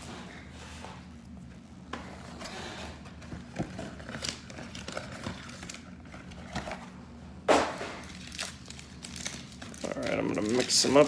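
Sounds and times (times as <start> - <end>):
packaging rustling: 8.0 - 11.0
wrapper crinkle: 8.0 - 11.0.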